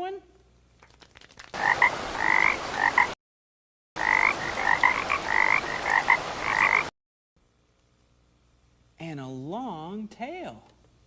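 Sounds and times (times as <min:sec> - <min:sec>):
frog croaks: 0:01.6 - 0:03.2, 0:04.0 - 0:06.9
background hiss: 0:04.0 - 0:11.0.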